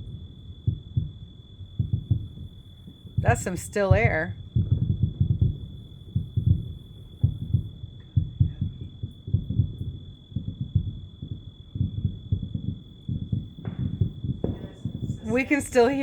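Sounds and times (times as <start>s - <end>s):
distant fireworks booms: 0.0s - 16.0s.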